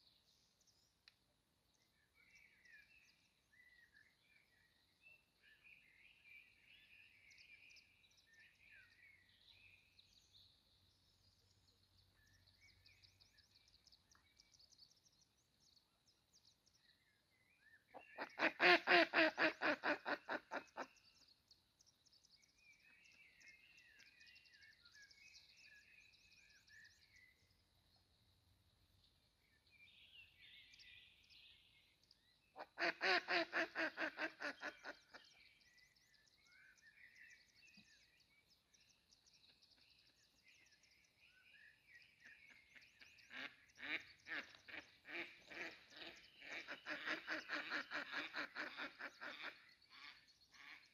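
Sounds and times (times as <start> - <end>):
songbird chirps and twitters: 0.0 - 50.9
bird harsh quacking calls: 18.0 - 20.9, 32.6 - 35.2, 43.3 - 50.8.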